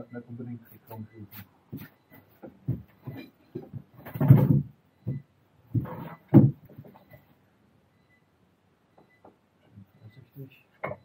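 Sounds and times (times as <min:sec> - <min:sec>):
drive shaft knocks and clunks: 0:02.4 - 0:07.0.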